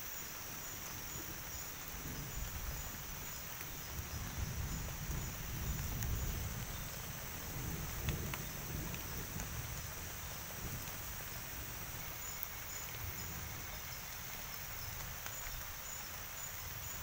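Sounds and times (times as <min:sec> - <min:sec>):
constant hiss: 0:00.0 - 0:17.0
insects chirping: 0:00.0 - 0:17.0.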